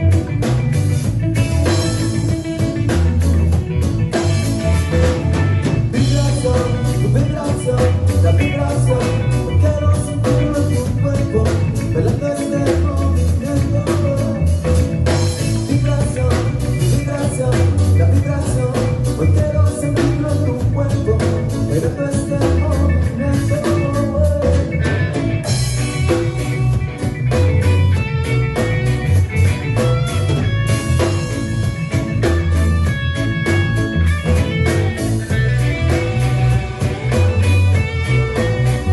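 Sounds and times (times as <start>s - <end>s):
bass: 0.0s - 38.9s
drum kit: 0.0s - 38.9s
guitars: 0.0s - 38.9s
person singing: 5.9s - 14.7s.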